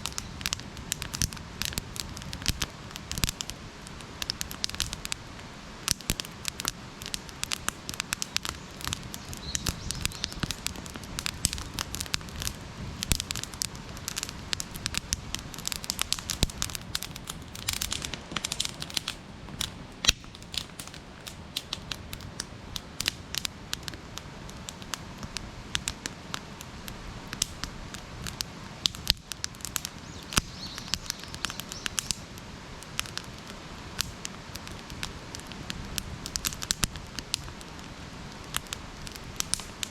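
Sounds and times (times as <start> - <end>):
campfire pops and crackles: 0.0 - 39.9
hiss of flames: 0.0 - 39.9.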